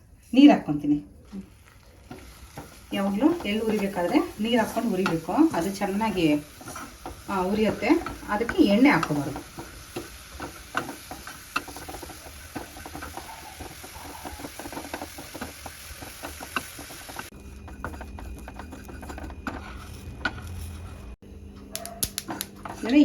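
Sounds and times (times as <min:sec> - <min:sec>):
sesame seeds popping in a pan: 0:22.0 - 0:22.8.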